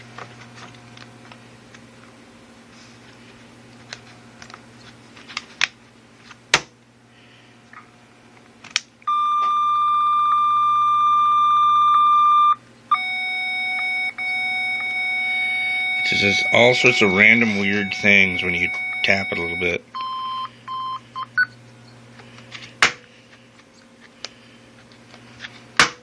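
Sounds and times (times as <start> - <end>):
electronic beeper tone: 9.1 - 21.5.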